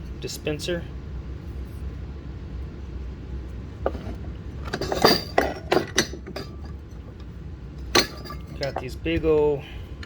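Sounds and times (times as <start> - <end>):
metal hand tools clinking: 4.7 - 6.8, 7.9 - 8.9.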